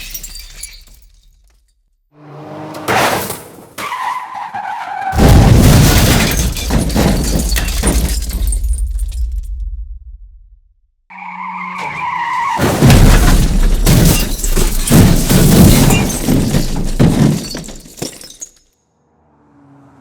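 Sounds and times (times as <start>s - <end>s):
glass shattering: 0.0s - 1.7s, 5.2s - 9.4s, 11.8s - 18.7s
car tyres screeching: 2.1s - 5.2s, 11.1s - 13.7s
car crash crunching impacts: 2.3s - 9.7s, 11.7s - 18.6s.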